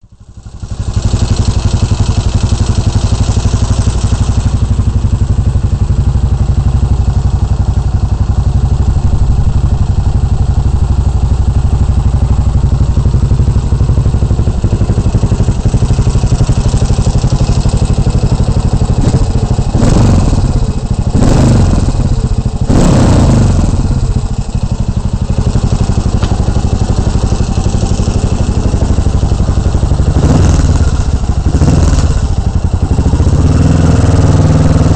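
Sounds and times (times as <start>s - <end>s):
motorcycle engine idling: 0.0s - 34.9s
engine revving blips: 19.0s - 24.2s, 30.1s - 34.9s.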